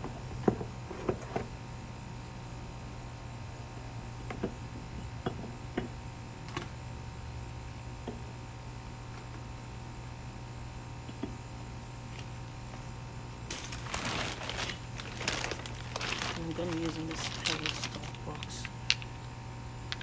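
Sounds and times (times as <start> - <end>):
steady low hum: 0.0 - 20.0
rustling crinkling handling noise: 13.5 - 20.0.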